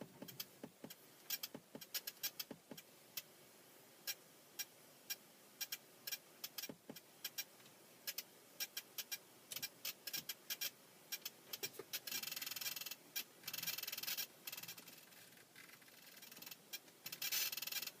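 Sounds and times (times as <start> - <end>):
electronic device clicking and crackling: 0.2 - 2.6, 8.1 - 18.0.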